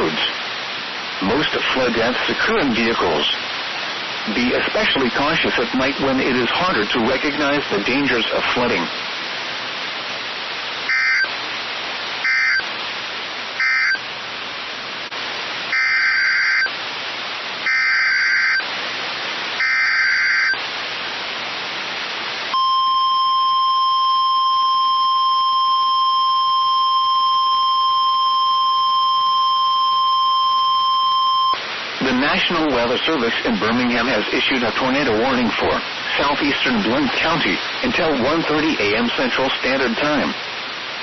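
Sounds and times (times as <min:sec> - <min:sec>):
radio hiss: 0:00.0 - 0:25.8, 0:26.6 - 0:41.0
screeching data bursts: 0:10.9 - 0:11.3, 0:12.2 - 0:12.7, 0:13.6 - 0:14.0, 0:15.7 - 0:16.7, 0:17.7 - 0:18.6, 0:19.6 - 0:20.6
steady warning alarm tone: 0:10.9 - 0:11.3, 0:12.2 - 0:12.7, 0:13.6 - 0:14.0, 0:15.7 - 0:16.7, 0:17.7 - 0:18.6, 0:19.6 - 0:20.6, 0:22.5 - 0:31.6.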